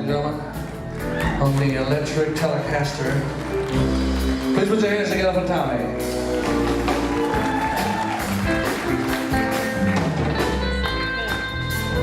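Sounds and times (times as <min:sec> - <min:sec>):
live band instrumental vamp: 0:00.0 - 0:12.0
electric guitar lead: 0:05.8 - 0:12.0.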